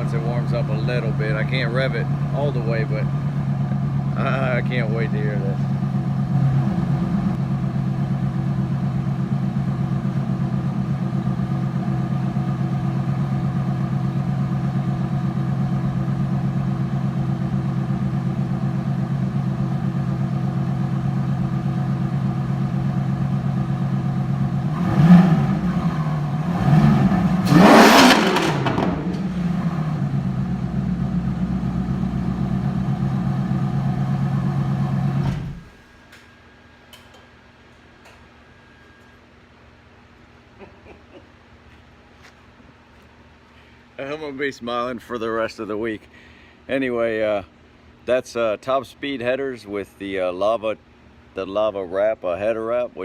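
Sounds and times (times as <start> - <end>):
sports car engine idling and revving: 0.0 - 35.8.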